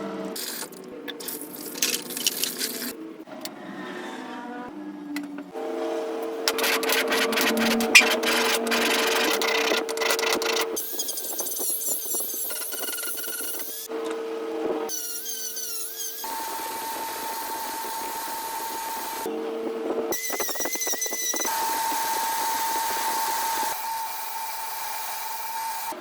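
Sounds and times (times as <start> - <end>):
power tool motor humming: 6.4 - 14.0, 14.9 - 19.3.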